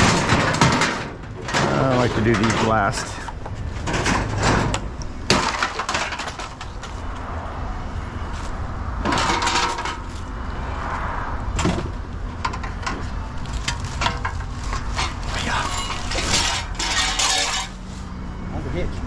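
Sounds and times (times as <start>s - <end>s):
metal crash: 0.0s - 7.1s, 9.0s - 10.3s, 11.5s - 17.9s
scrap metal clanking and clattering: 0.0s - 7.2s, 9.0s - 10.3s, 11.6s - 18.1s.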